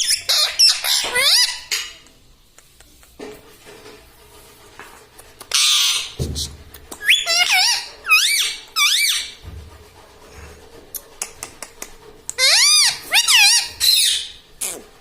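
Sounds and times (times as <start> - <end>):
parrot calling: 0.0 - 2.0, 5.4 - 9.4, 12.3 - 14.8.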